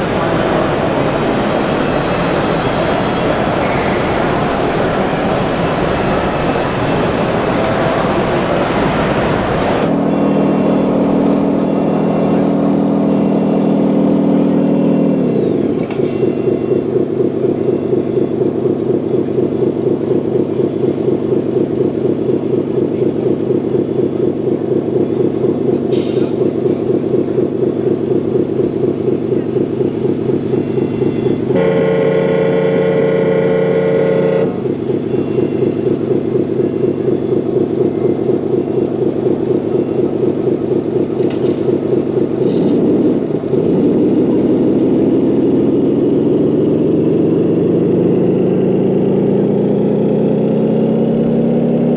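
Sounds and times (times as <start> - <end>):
strong pitched tone: 0.0 - 19.4
toy truck engine drone: 0.0 - 48.8.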